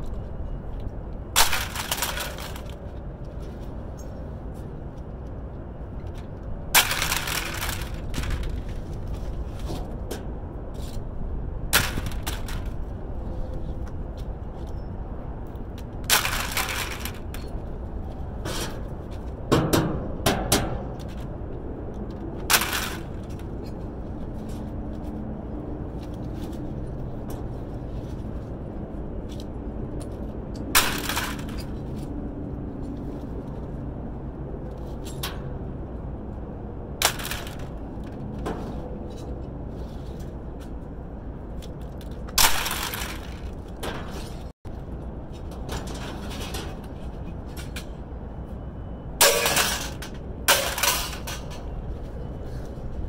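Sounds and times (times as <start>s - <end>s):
steady low rumble: 0.0s - 53.0s
scrap metal clanking and crashing: 1.4s - 2.7s, 6.8s - 8.5s, 16.1s - 17.4s, 22.5s - 23.4s, 30.8s - 31.8s, 42.4s - 44.5s, 49.2s - 51.7s.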